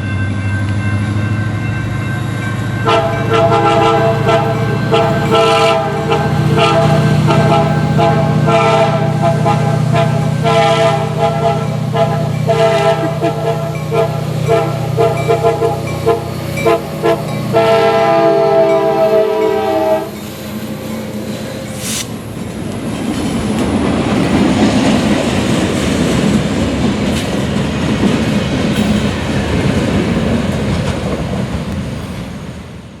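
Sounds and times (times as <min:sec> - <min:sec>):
train wheels clattering on rails: 0:00.0 - 0:17.8, 0:18.4 - 0:33.0
locomotive air horn blasts: 0:02.8 - 0:20.2.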